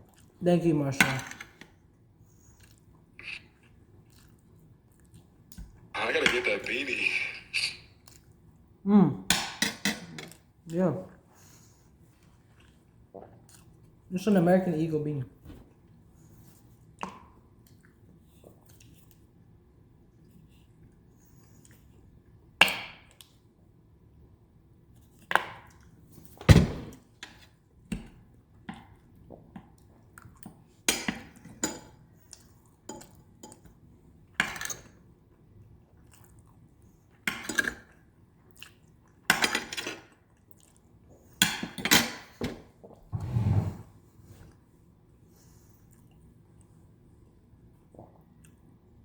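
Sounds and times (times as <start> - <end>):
chewing: 0.0 - 0.3, 2.4 - 5.3, 12.2 - 13.8, 35.9 - 36.6.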